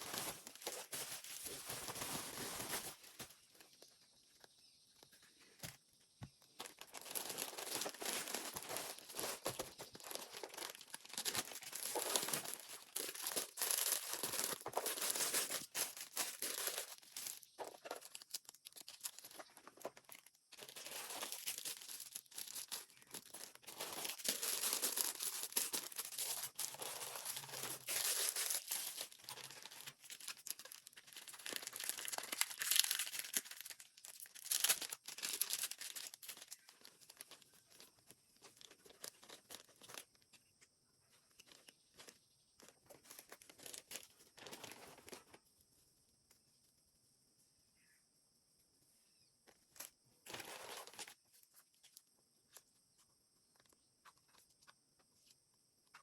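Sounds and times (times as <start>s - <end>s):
packaging crinkling and tearing: 0.0s - 3.4s, 6.6s - 40.2s, 42.8s - 45.2s.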